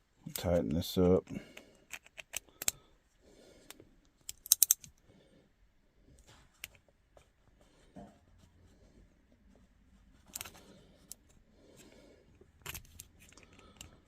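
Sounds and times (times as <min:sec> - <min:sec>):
hand tool clicking: 0:04.3 - 0:04.9.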